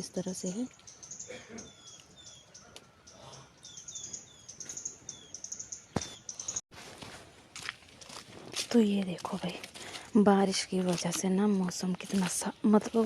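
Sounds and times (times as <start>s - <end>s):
small birds chirping and twittering: 0.0s - 6.7s, 10.7s - 13.0s.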